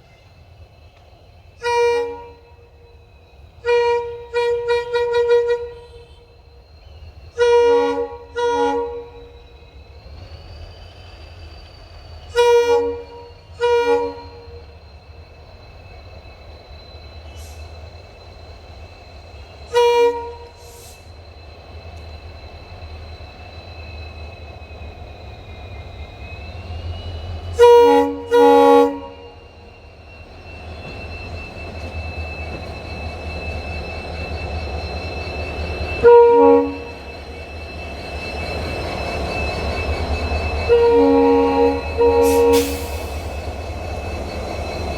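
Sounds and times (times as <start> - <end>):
approaching train rumble: 0.0 - 44.9
locomotive engine hum and whine: 0.0 - 44.9
train horn blasts: 1.6 - 2.9, 3.6 - 6.3, 7.3 - 9.4, 12.3 - 14.7, 19.7 - 21.0, 27.5 - 29.6, 36.0 - 37.1, 40.6 - 43.3.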